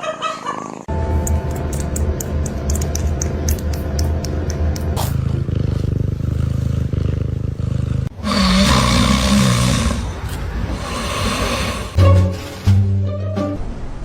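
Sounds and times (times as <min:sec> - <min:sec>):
cat snoring: 0:05.0 - 0:12.0
hissy rushing sound: 0:09.8 - 0:12.0.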